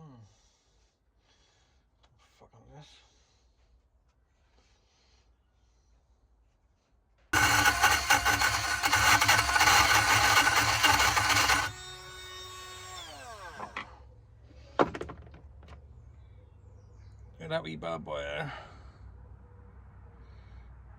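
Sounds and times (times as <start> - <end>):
power drill running: 7.4 - 13.8.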